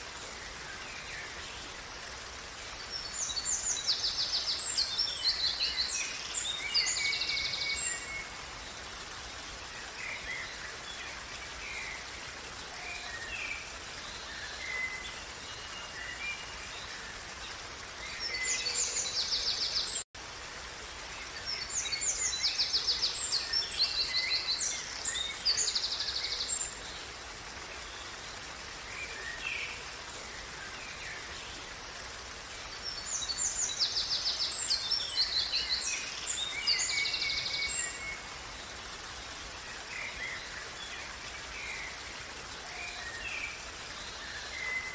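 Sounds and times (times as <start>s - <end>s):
songbirds singing: 0.0s - 20.0s, 21.0s - 44.9s
creek water running: 0.0s - 44.9s.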